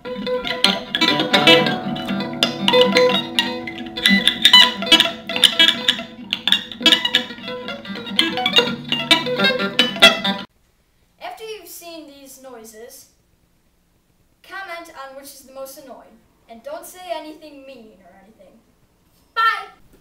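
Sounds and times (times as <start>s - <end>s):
guitar playing: 0.0s - 10.5s.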